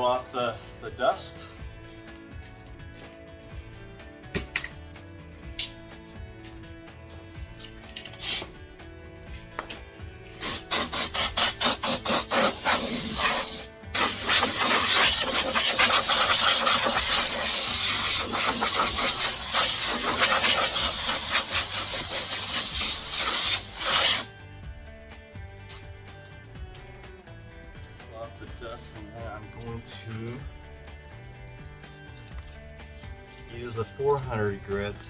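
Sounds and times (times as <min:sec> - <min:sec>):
compressed air puffs and hiss: 0:08.1 - 0:08.6, 0:10.2 - 0:24.3.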